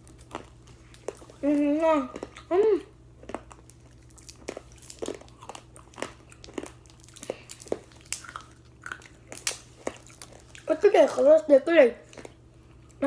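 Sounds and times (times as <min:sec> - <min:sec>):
hard candy crunching: 0:03.2 - 0:13.0.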